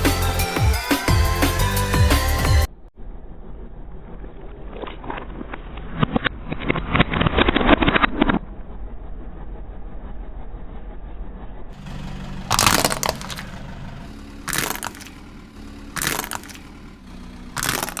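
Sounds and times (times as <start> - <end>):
plastic cracking under a tyre: 12.5 - 13.6, 14.5 - 15.2, 16.0 - 16.7, 17.6 - 18.0.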